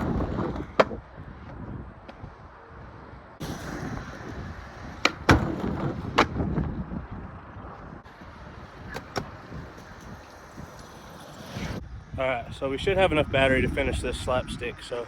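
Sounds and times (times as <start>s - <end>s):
outdoor background noise: 0.0s - 15.0s.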